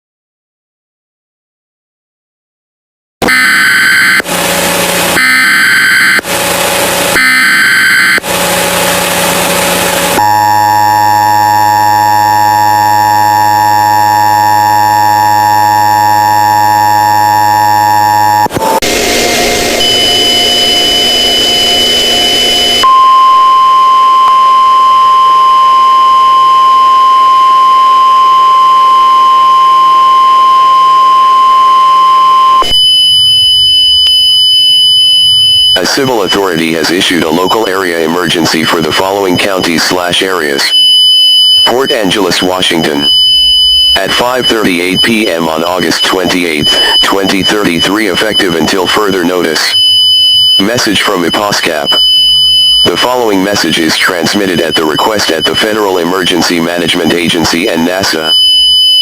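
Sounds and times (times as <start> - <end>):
harsh buzzing data bursts: 3.2 - 59.0
steady alarm tone: 3.2 - 59.0
chord of alert tones: 7.1 - 8.2, 32.7 - 59.0.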